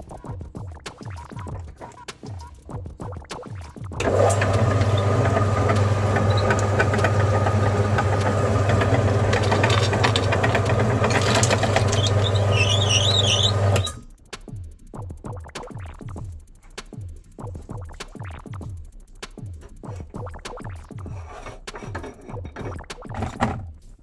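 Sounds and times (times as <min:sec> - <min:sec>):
meat grinder motor hum: 0:04.0 - 0:14.0
high-pitched squeal: 0:09.6 - 0:14.0.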